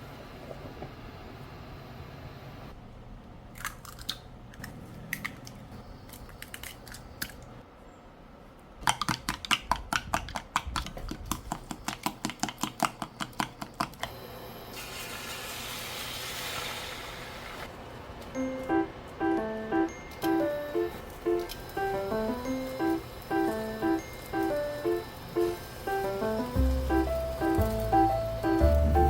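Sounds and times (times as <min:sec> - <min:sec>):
hiss: 0:14.7 - 0:17.7.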